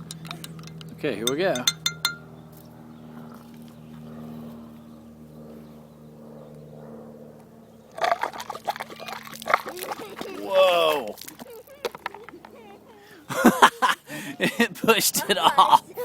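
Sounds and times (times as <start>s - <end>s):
low hum: 0.0s - 14.3s
liquid pouring and fizzing: 8.0s - 10.3s.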